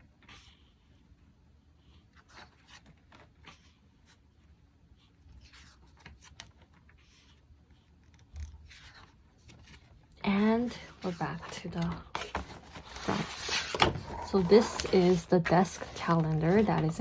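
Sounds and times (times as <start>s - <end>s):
paper pages turning: 5.0s - 17.0s.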